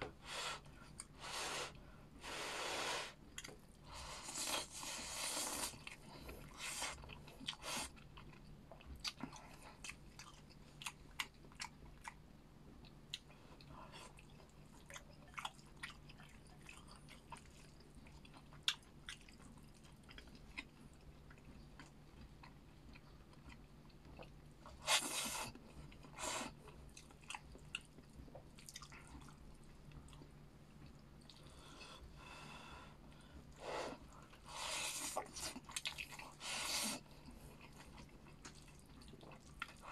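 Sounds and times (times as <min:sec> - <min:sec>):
low steady hum: 0:00.0 - 0:39.9
chewing and mouth smacks: 0:03.2 - 0:03.8, 0:05.7 - 0:31.5, 0:35.2 - 0:36.4, 0:37.0 - 0:39.9.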